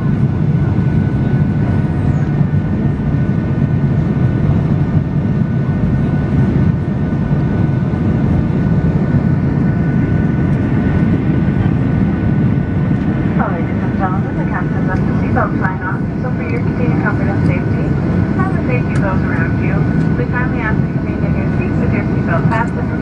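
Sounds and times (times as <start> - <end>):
jet engines rumbling: 0.0 - 23.0
thin steady whine: 8.7 - 23.0.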